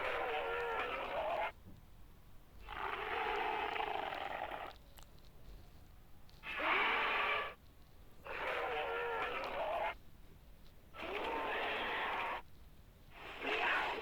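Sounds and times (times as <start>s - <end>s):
raspy creature roars: 8.3s - 10.0s, 11.0s - 12.4s, 13.2s - 14.0s.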